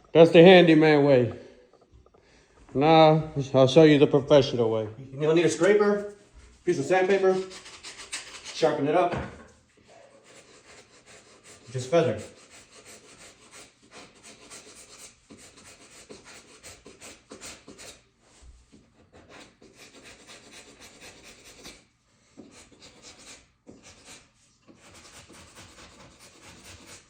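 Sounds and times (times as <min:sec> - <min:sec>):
hand scraper rasping on wood floor: 0:18.7 - 0:27.0.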